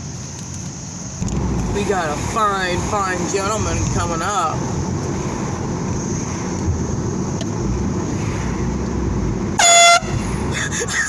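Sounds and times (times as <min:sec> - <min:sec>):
low rumble: 0:01.2 - 0:11.0
air horn blare: 0:09.6 - 0:10.4.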